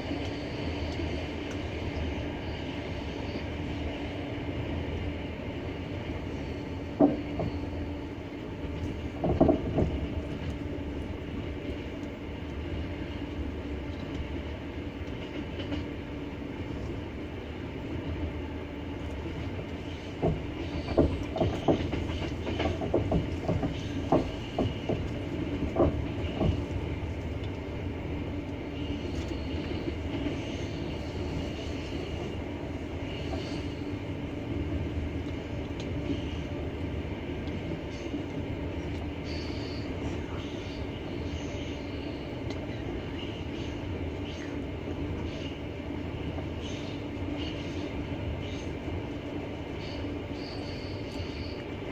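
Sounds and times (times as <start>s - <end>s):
train wheels rumbling on rails: 0.0s - 51.9s
wheels clacking over rail joints: 8.7s - 10.6s, 20.1s - 27.5s.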